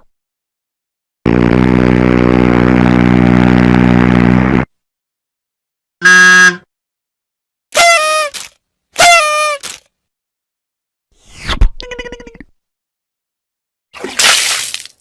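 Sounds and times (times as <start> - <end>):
buzzy comedy blare: 7.8 - 9.8.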